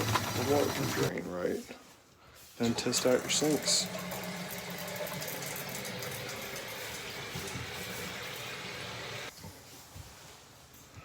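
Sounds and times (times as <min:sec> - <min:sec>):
faucet running water into sink: 0:00.0 - 0:01.1, 0:02.7 - 0:09.3.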